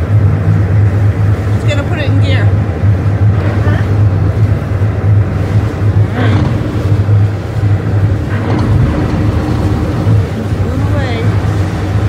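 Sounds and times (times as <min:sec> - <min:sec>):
boat engines rumbling: 0:00.0 - 0:12.0.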